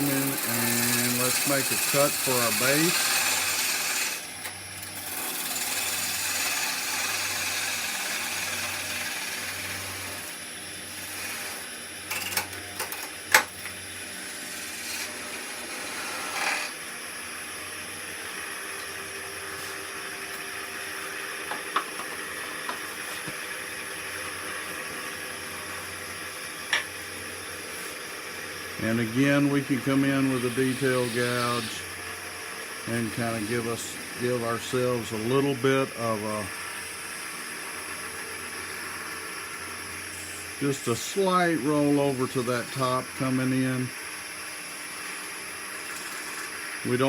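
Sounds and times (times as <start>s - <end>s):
parting tool scraping wood: 0.0s - 4.2s, 14.2s - 16.8s
wood lathe hum: 0.0s - 47.0s.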